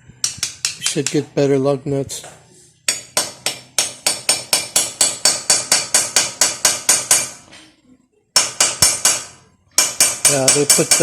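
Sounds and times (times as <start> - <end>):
hammer tapping on metal: 0.2 - 1.3, 2.9 - 7.4, 8.4 - 11.0.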